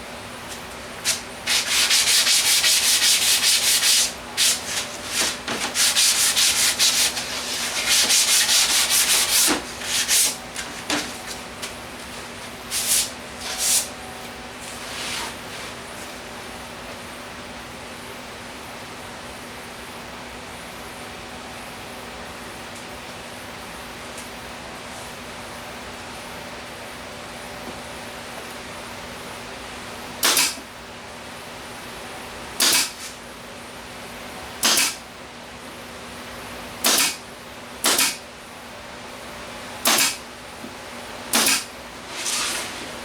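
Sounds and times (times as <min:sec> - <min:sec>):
sandpaper rubbing on wood: 0:01.1 - 0:10.8.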